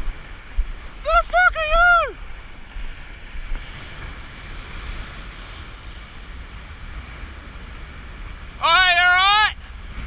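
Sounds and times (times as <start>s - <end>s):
ocean surf washing: 0.0s - 10.0s
wind rumbling on microphone: 0.0s - 10.0s.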